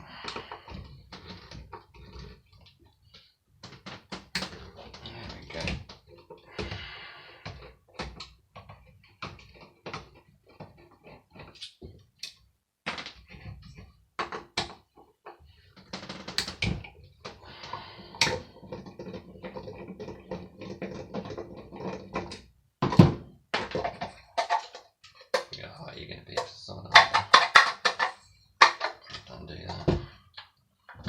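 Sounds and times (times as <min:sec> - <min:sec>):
hand tools clicking and knocking: 0:14.2 - 0:25.6, 0:26.3 - 0:31.0.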